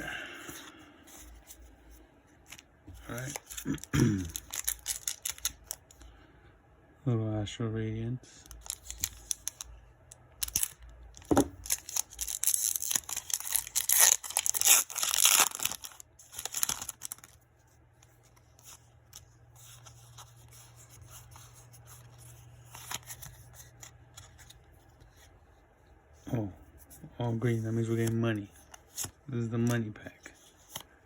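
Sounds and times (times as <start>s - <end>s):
low steady hum: 0.0s - 31.0s
foil wrapper tearing and crinkling: 3.1s - 5.8s, 8.5s - 9.6s, 10.4s - 17.4s.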